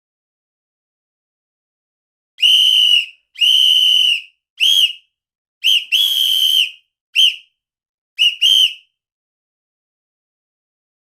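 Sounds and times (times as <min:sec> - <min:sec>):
high-pitched whistle blasts: 0:02.4 - 0:05.0, 0:05.6 - 0:07.4, 0:08.2 - 0:08.9.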